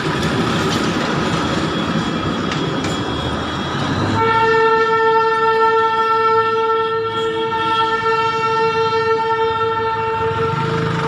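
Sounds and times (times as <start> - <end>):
moving train rumble: 0.0 - 11.0
train horn blast: 4.1 - 11.0.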